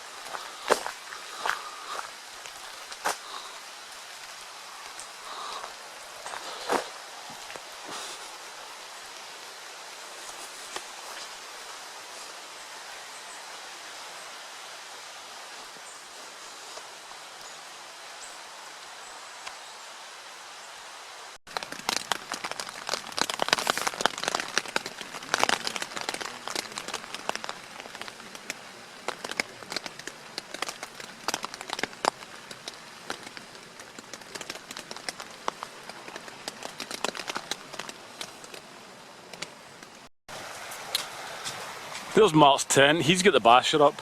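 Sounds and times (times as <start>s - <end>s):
steady outdoor hiss: 0.0s - 44.0s
raindrops tapping on a surface: 21.5s - 40.1s.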